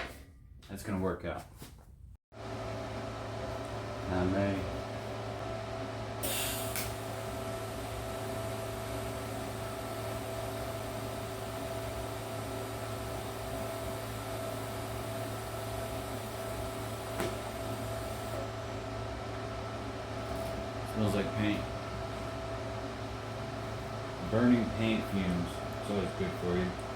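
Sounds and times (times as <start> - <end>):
welder humming: 2.4 - 26.9
welding arc hissing: 6.2 - 18.4.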